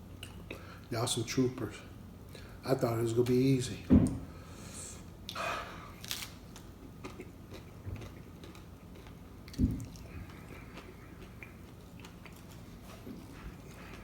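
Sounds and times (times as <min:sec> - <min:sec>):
person chewing food: 0:05.2 - 0:14.0.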